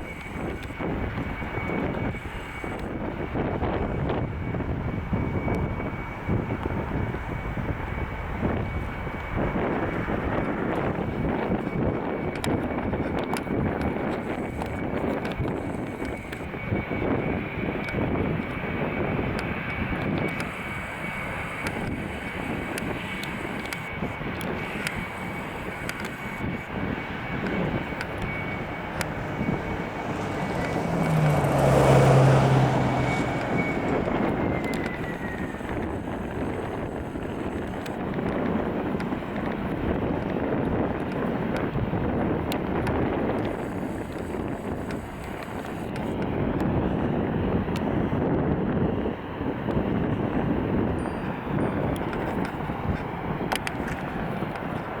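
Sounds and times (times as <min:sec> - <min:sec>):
jet airliner passing: 0:00.0 - 0:55.0
wind buffeting microphone: 0:00.0 - 0:55.0.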